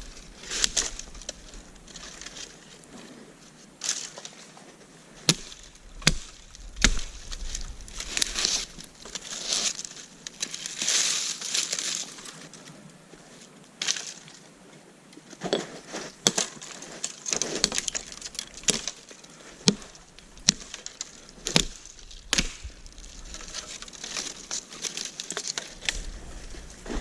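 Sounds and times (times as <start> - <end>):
twigs snapping: 0.1 - 2.5, 5.3 - 12.4, 16.2 - 27.0.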